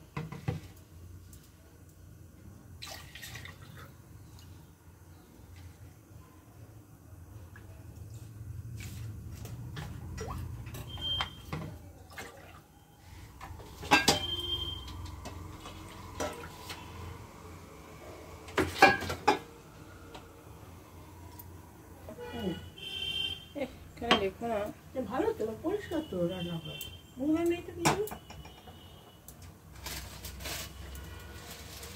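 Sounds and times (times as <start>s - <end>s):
dishes and utensils clinking: 13.6s - 16.6s, 18.6s - 19.6s, 27.8s - 28.8s
dishes clattering: 13.8s - 14.4s, 18.6s - 19.5s.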